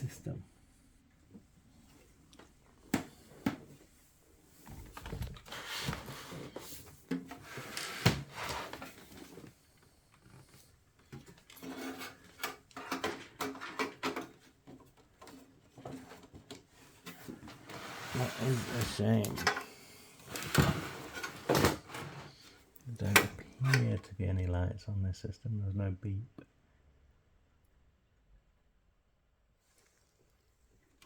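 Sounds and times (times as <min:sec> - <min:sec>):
computer parts rustling and rattling: 0:01.7 - 0:24.1.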